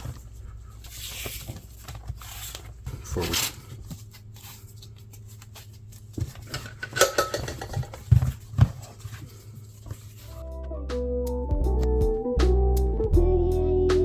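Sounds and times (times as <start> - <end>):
steady low hum: 0.0 - 10.5.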